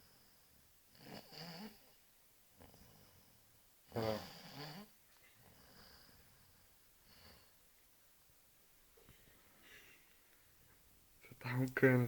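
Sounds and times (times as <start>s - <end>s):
woman snoring: 0.9s - 1.9s, 3.9s - 4.9s.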